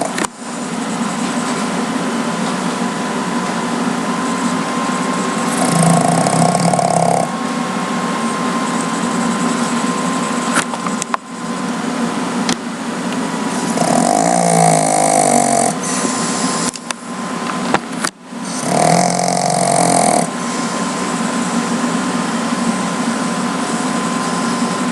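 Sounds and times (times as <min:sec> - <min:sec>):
pet snoring: 0:00.0 - 0:00.2, 0:05.4 - 0:07.3, 0:13.5 - 0:16.7, 0:18.4 - 0:20.7.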